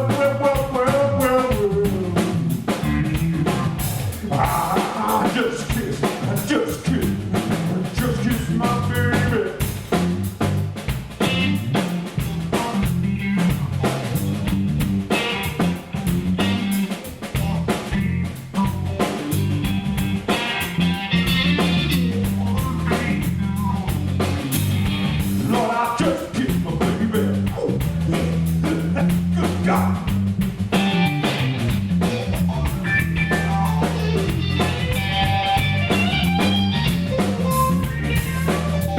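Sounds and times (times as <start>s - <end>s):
drum kit steady beat: 0.0s - 38.9s
live blues band playing: 0.0s - 38.9s.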